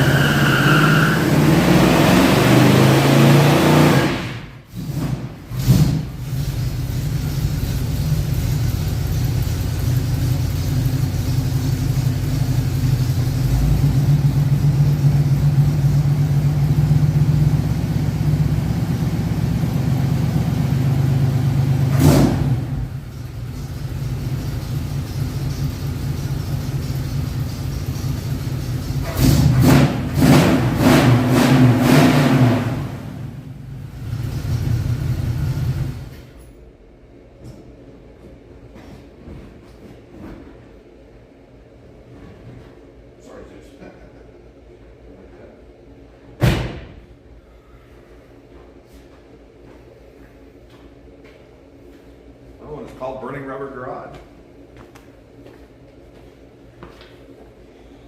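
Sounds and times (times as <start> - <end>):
car engine running and revving: 1.3 - 4.2, 4.8 - 36.2.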